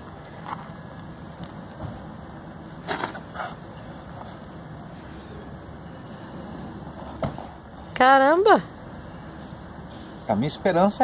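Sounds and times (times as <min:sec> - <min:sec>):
small fire hissing: 0:08.6 - 0:10.4.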